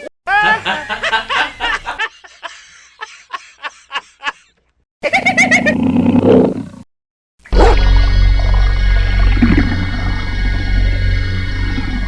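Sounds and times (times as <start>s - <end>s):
music: 7.6s - 12.0s.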